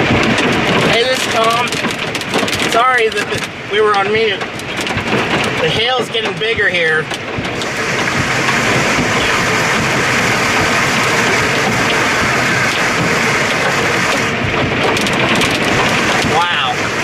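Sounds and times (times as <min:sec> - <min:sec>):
hail and heavy rain pelting: 0:00.0 - 0:17.0
strong wind: 0:00.0 - 0:17.0.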